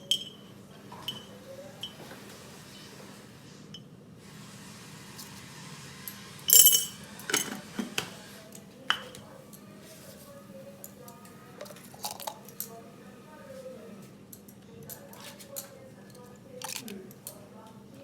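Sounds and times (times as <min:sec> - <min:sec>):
utensils and dishes clattering: 0:00.0 - 0:02.4, 0:06.1 - 0:08.1, 0:10.8 - 0:12.8, 0:14.3 - 0:17.4.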